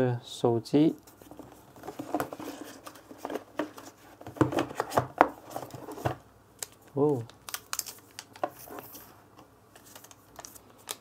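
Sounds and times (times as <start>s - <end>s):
plastic wrapping rustling: 1.0s - 9.2s
cardboard box tapping and rustling: 1.4s - 6.2s.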